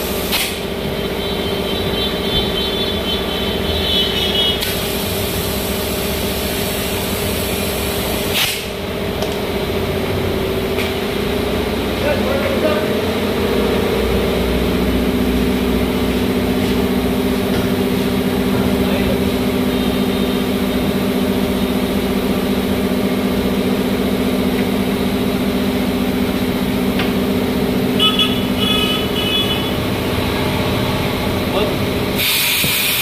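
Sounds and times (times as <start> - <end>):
short high-pitched beeps: 28.0 - 29.7.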